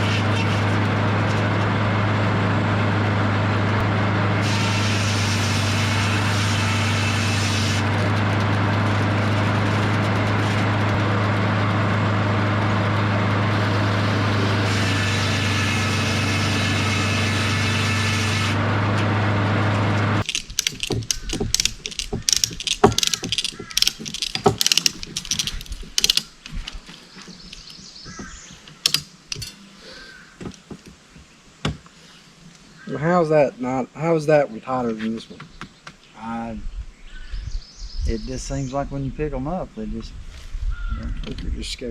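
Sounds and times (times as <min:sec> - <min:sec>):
engine running: 0:00.0 - 0:30.9
irregular clicks and knocks: 0:20.2 - 0:29.6, 0:30.4 - 0:31.9.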